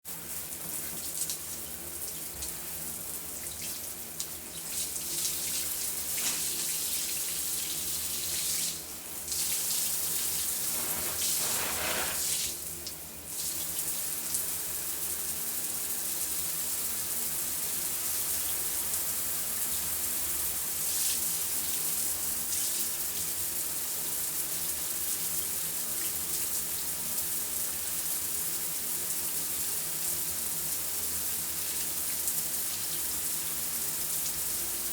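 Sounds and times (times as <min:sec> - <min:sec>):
shower water spraying: 0:03.6 - 0:12.7.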